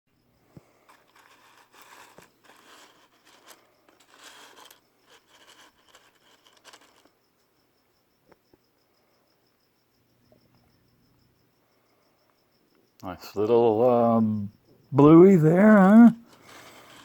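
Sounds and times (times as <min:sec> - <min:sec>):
cricket chirping: 0:00.1 - 0:17.0
crinkling and rustling: 0:00.5 - 0:07.2, 0:16.2 - 0:17.0.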